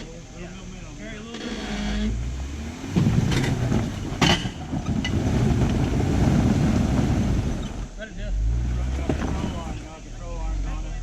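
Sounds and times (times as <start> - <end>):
engine working under load: 0.0 - 11.0
tyres on rocks: 1.6 - 7.9, 8.8 - 9.9
sharp knocks: 2.6 - 7.8.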